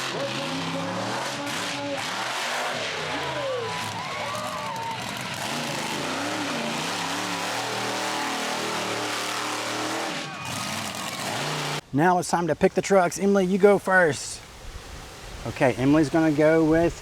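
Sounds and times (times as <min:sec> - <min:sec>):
monster truck engine revving: 0:00.0 - 0:11.8.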